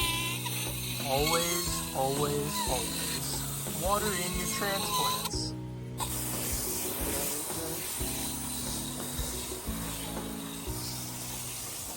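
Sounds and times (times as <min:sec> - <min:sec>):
background music with low notes: 0:00.0 - 0:11.9
water spraying hiss: 0:00.0 - 0:11.9.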